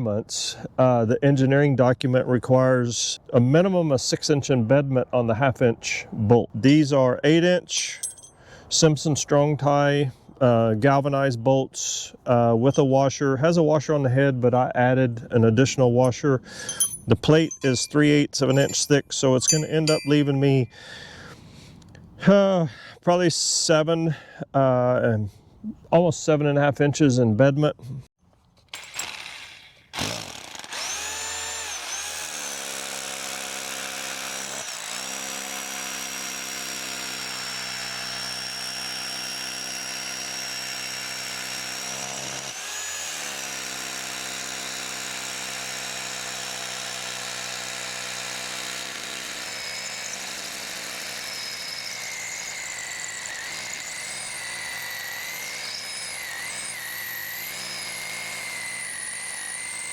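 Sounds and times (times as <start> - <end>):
hammer drill boring into concrete: 16.0 - 20.8, 28.7 - 59.9.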